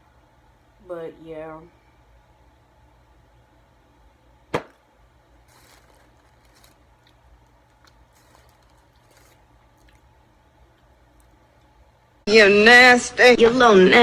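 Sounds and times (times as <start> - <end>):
low steady hum: 0.0 - 14.0
sharp knock: 4.5 - 4.8.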